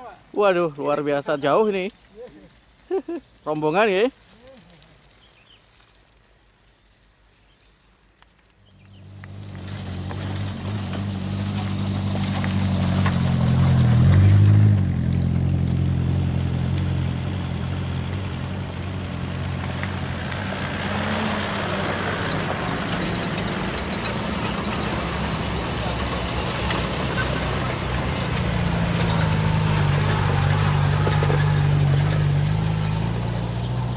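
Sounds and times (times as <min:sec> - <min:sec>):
vehicle engine passing: 0:08.9 - 0:33.9.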